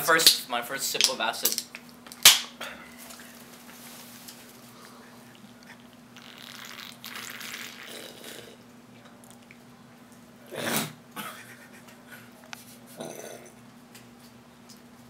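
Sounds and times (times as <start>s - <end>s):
breathing: 4.6s - 5.2s
person sipping fizzy drink: 4.7s - 8.6s.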